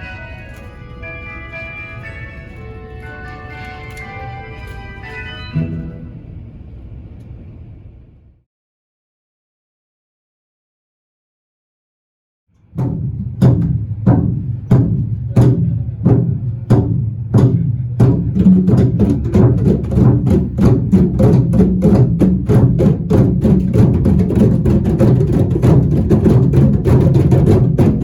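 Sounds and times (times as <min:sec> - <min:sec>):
low sustained bass: 0:05.5 - 0:07.0
drum beat: 0:12.7 - 0:28.0.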